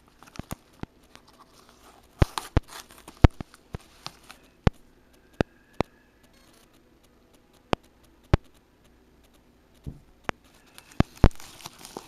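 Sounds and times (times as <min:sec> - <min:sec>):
packaging crinkling: 0:00.0 - 0:04.6, 0:10.5 - 0:12.0.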